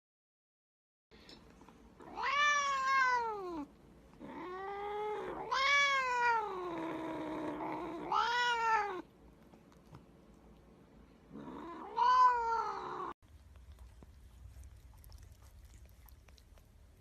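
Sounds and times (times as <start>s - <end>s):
cat meowing: 2.0s - 6.8s, 7.7s - 9.0s, 11.4s - 13.2s.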